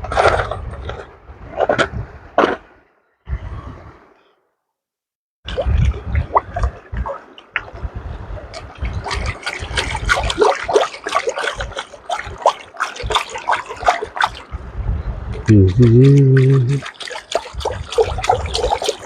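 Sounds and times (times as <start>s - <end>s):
water trickling and splashing: 5.5s - 19.0s.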